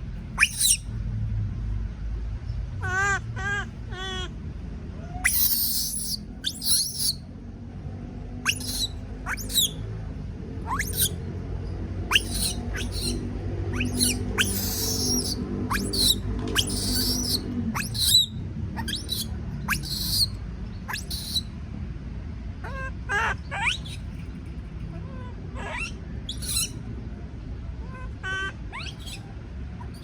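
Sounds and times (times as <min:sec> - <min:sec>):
baby monkey shrieking: 0:00.4 - 0:00.9, 0:02.8 - 0:04.3, 0:05.0 - 0:07.2, 0:08.4 - 0:09.8, 0:10.7 - 0:11.2, 0:12.0 - 0:21.5, 0:22.6 - 0:24.1, 0:25.0 - 0:26.8, 0:27.8 - 0:30.0.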